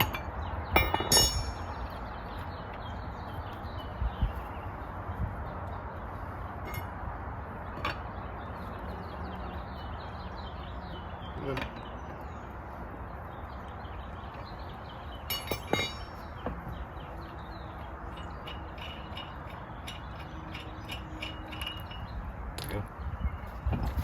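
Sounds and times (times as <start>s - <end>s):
metal clinking: 0.8s - 1.8s, 15.3s - 16.2s, 18.1s - 22.8s.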